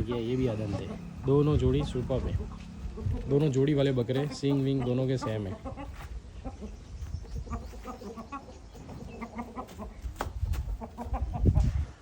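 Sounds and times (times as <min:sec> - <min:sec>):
low rumble: 0:00.0 - 0:04.0
chickens clucking: 0:00.0 - 0:12.0.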